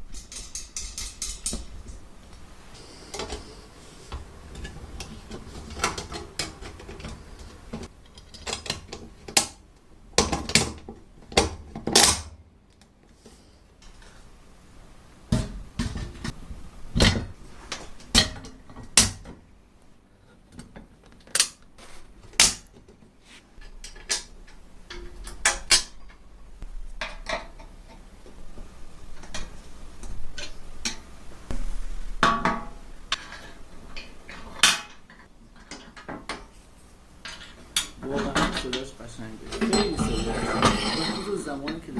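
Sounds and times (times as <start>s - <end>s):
metal parts and tools clinking: 0.1s - 1.7s, 39.5s - 41.8s
metal scraping and rattling: 37.3s - 41.9s.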